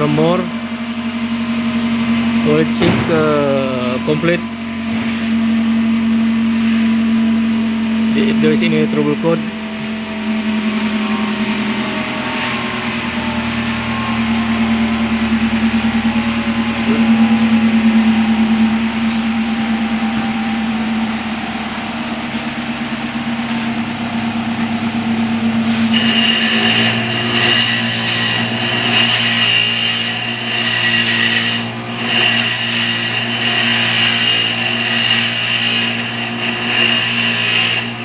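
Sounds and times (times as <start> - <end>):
car engine idling: 11.1 - 25.6.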